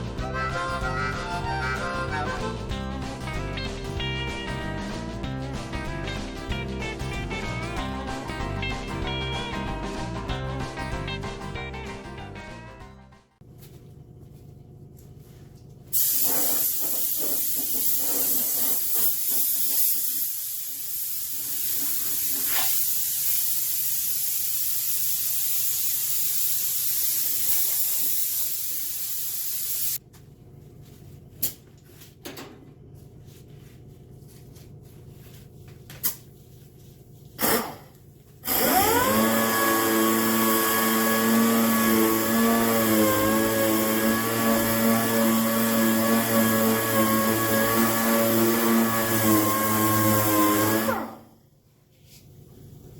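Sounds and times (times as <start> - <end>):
sander hissing: 16.0 - 30.0, 38.5 - 51.1.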